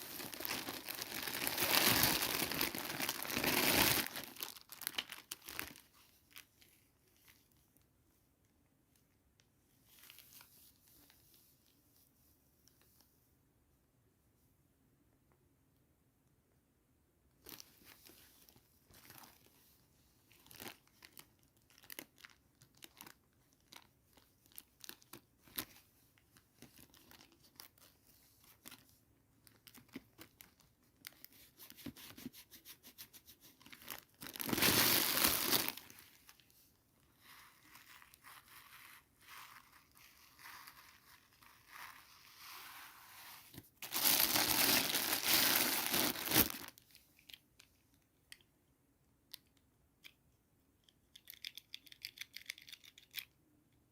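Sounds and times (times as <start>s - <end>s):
packaging tearing: 0.0s - 5.8s, 33.8s - 35.9s, 43.8s - 46.7s
plastic and cardboard crinkling: 0.0s - 7.6s, 17.4s - 19.7s, 20.3s - 47.8s.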